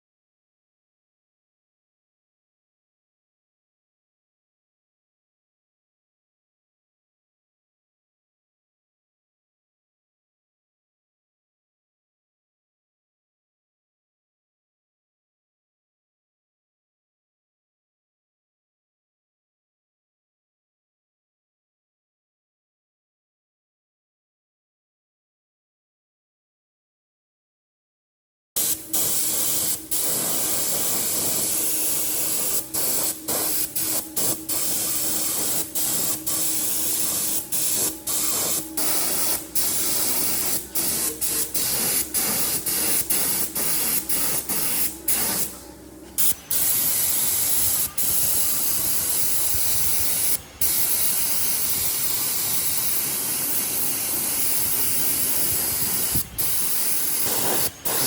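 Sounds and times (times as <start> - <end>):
spraying hiss: 28.6 - 45.6, 46.2 - 58.0.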